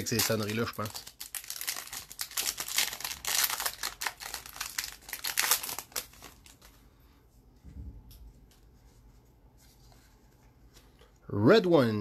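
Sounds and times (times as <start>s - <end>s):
wrapper crinkling: 0.0s - 6.8s.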